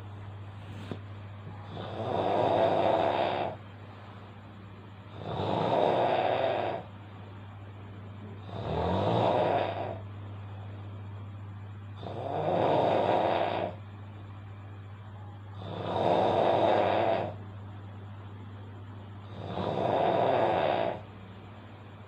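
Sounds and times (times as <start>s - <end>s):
steady low hum: 0.0s - 22.0s
person snoring loudly: 1.6s - 3.6s, 5.1s - 6.9s, 8.4s - 10.0s, 12.0s - 13.8s, 15.6s - 17.4s, 19.2s - 21.1s.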